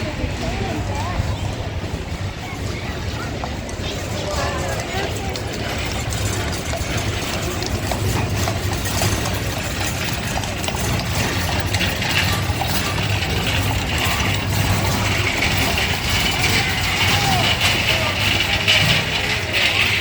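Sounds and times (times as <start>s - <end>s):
hooves and wheels clattering: 0.0s - 20.0s
steady low rumble: 0.0s - 20.0s.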